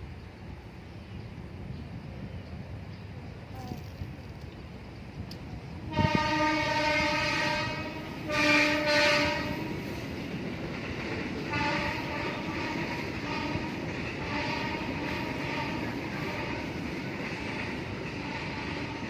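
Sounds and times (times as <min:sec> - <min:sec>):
train horn blasts: 0:05.8 - 0:09.9, 0:11.5 - 0:16.8, 0:18.3 - 0:19.0.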